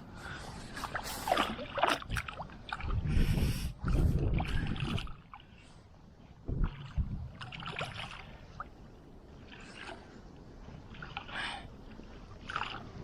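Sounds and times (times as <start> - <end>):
water splashing: 0.6 - 5.6, 6.5 - 13.0
low rumble: 2.7 - 5.3, 6.0 - 9.3.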